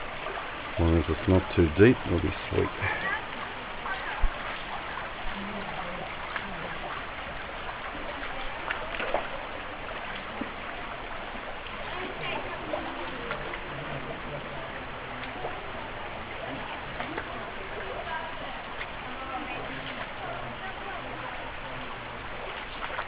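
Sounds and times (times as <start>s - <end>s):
creek water over rocks: 0.0s - 23.0s
footsteps splashing in creek: 0.0s - 23.0s.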